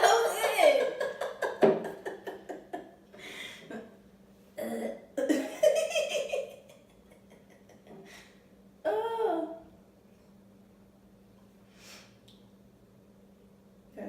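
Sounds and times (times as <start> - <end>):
people laughing: 0.0 - 2.9, 5.3 - 8.0.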